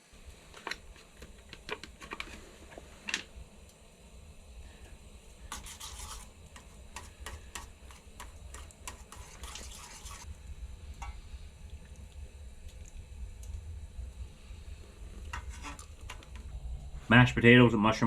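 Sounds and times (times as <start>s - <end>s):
low hum: 0.0s - 18.0s
utensil scraping cookware: 5.5s - 10.3s, 15.3s - 16.4s.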